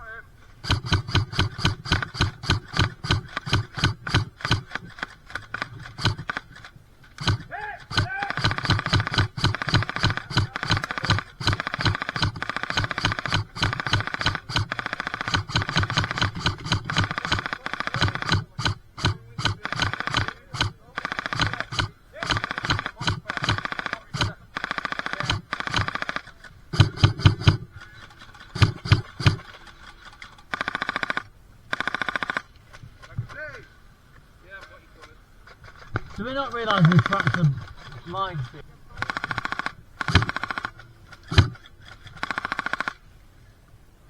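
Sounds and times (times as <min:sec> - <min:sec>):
airsoft guns firing bursts: 0:00.6 - 0:33.6, 0:35.5 - 0:43.0.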